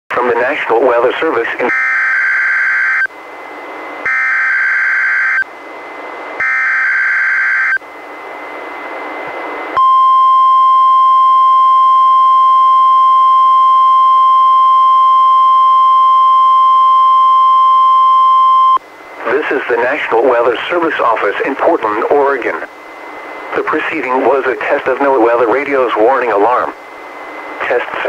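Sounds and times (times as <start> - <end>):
radio hiss: 0.1 - 1.7, 18.8 - 28.0
steady warning alarm tone: 1.6 - 28.0.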